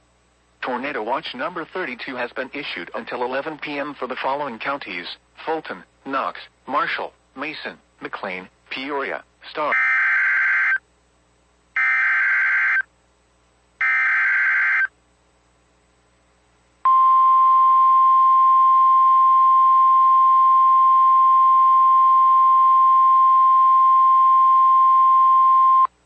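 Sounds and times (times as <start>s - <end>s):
steady alarm tone: 9.6s - 10.8s, 11.8s - 12.9s, 13.8s - 14.9s.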